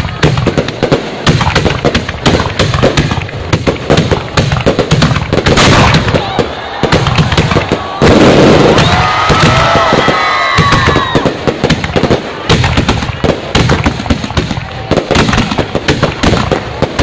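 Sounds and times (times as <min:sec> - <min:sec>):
fireworks bangs and crackles: 0:00.0 - 0:17.0
fireworks whistles gliding in pitch: 0:06.1 - 0:11.4.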